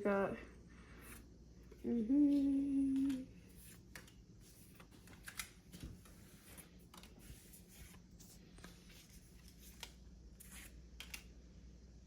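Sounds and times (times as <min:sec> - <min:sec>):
trading cards rustling and scraping: 0:02.4 - 0:11.3.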